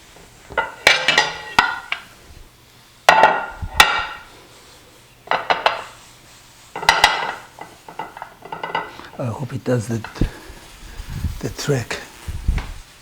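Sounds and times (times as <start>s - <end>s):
kitchenware knocking and clinking: 0.5s - 2.0s, 3.1s - 4.3s, 5.3s - 5.8s, 6.8s - 9.0s.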